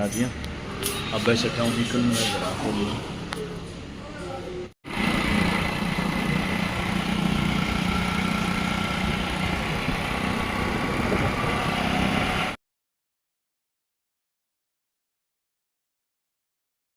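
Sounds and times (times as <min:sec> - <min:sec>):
motorcycle engine running: 0:04.9 - 0:12.6.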